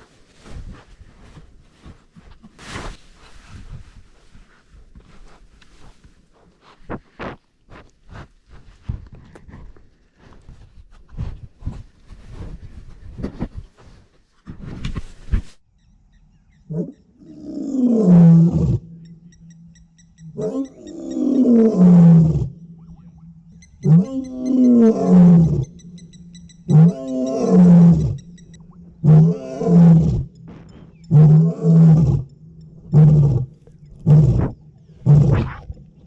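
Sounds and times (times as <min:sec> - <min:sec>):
lion roaring and grunting: 0:16.7 - 0:18.9, 0:20.3 - 0:23.1, 0:23.8 - 0:25.7, 0:26.6 - 0:28.3, 0:28.9 - 0:30.3, 0:31.1 - 0:35.8.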